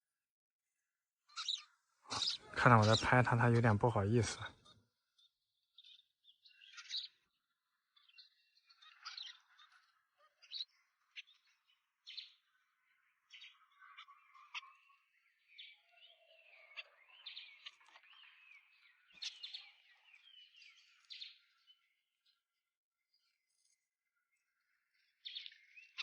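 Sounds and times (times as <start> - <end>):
small birds chirping: 1.3 - 26.0.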